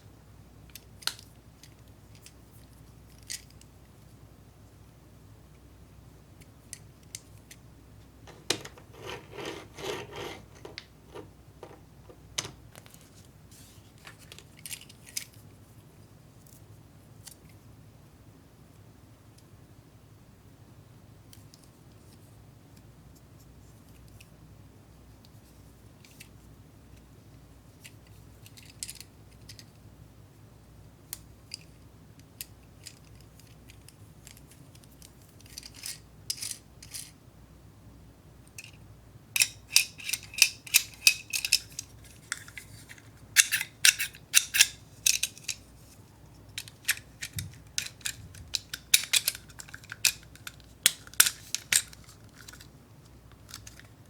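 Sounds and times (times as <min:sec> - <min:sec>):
plastic parts clicking and rattling: 0:08.3 - 0:13.0, 0:32.8 - 0:37.1, 0:39.4 - 0:45.7, 0:46.5 - 0:54.0.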